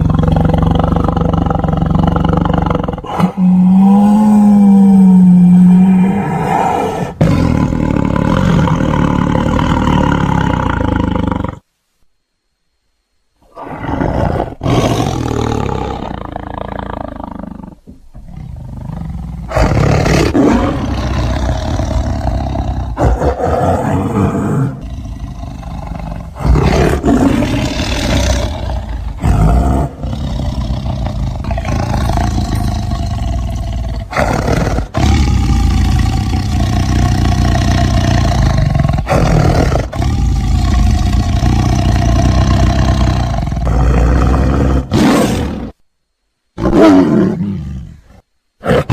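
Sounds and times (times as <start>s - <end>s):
big cats growling and roaring: 0.0s - 11.6s, 13.5s - 45.8s.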